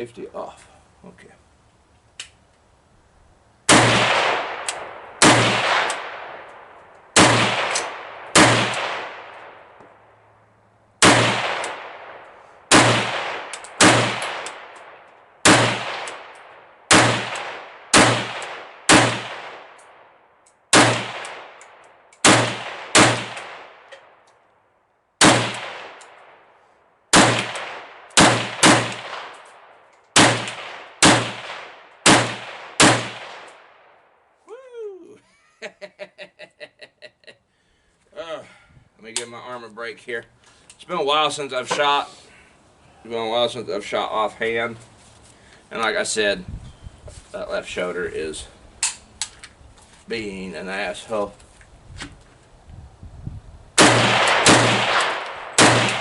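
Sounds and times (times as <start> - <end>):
rifle shots with echo: 3.7 - 9.8, 11.0 - 20.1, 20.7 - 24.2, 25.2 - 26.5, 27.1 - 34.0, 53.8 - 56.0.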